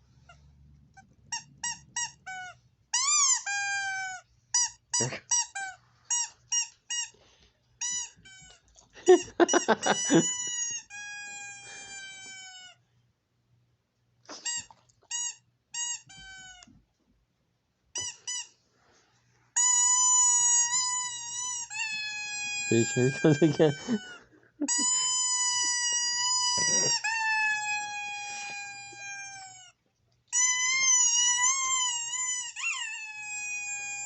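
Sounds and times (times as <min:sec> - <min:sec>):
high squeaks through a speaker: 0:19.6 - 0:29.6, 0:30.4 - 0:34.0.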